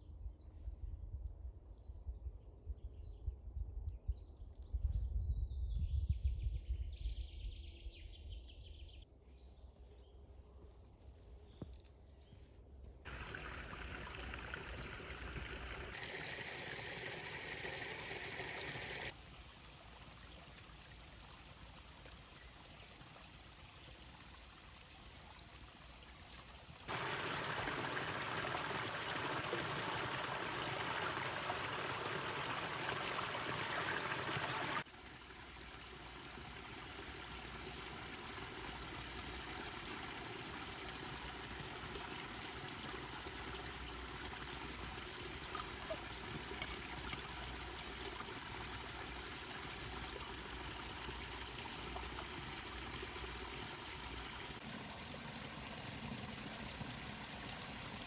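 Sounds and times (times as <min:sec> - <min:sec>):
running water rushing: 0:13.1 - 0:58.0.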